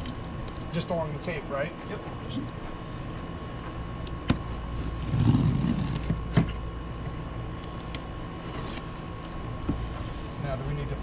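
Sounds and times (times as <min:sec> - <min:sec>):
steady low hum: 0:00.0 - 0:11.0
cardboard box scraping: 0:04.9 - 0:06.2.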